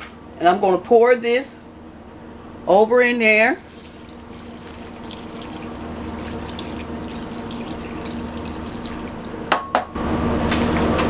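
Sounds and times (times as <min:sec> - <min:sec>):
gravy pouring and splashing: 0:03.3 - 0:09.5.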